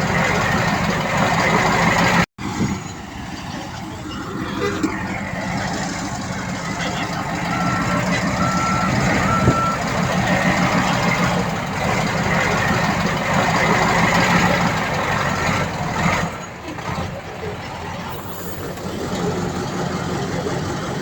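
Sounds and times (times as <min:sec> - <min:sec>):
diesel engine running: 0:00.0 - 0:21.0
backup alarm beeping: 0:07.3 - 0:10.0.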